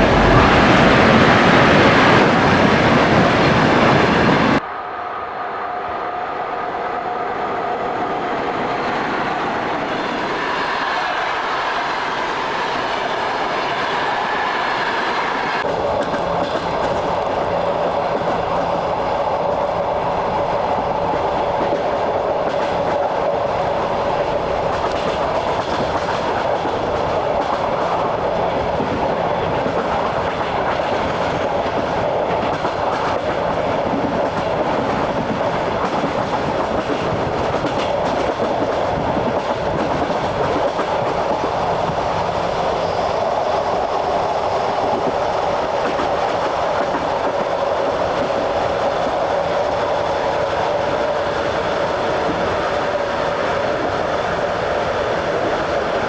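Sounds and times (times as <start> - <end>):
train wheels clattering over rail joints: 0.0 - 4.4, 21.1 - 43.8
train running rumble: 0.0 - 4.6, 7.9 - 56.0.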